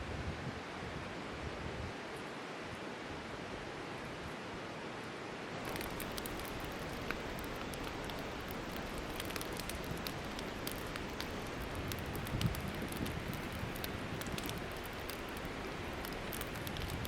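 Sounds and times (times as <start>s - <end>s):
low hiss: 0.0s - 17.0s
campfire crackling and popping: 5.6s - 17.0s.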